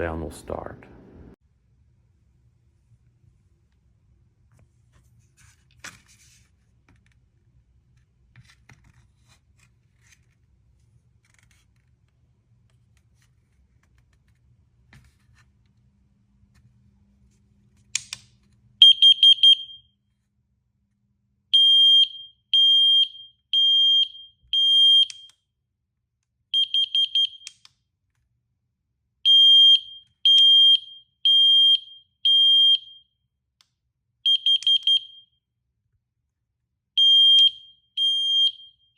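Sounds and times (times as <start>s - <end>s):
smoke alarm beeping: 18.8s - 20.0s, 21.5s - 25.4s, 26.6s - 27.6s, 29.3s - 33.2s, 34.2s - 35.4s, 37.0s - 38.9s.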